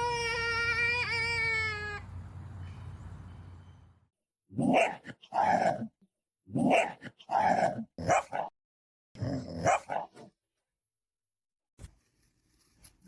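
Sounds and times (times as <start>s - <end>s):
dog barking: 4.6s - 5.8s, 6.6s - 8.5s, 9.6s - 10.3s.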